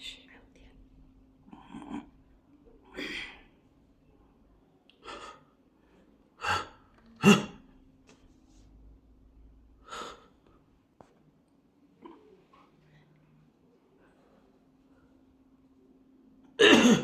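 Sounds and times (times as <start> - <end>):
loud sneeze: 6.5 - 7.6, 16.6 - 17.0
person gasping breaths: 9.8 - 10.4.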